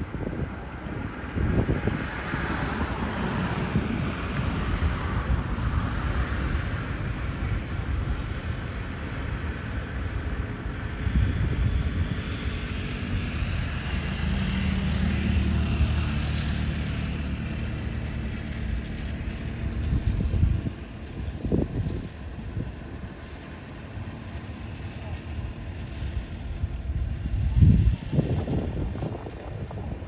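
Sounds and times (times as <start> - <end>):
low engine drone: 0.0 - 30.0
wind noise on microphone: 0.0 - 30.0
rain: 2.1 - 19.8.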